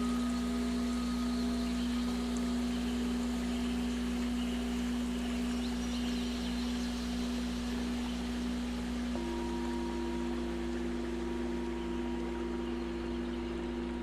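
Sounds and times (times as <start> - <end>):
faint higher tones: 8.9 - 14.0.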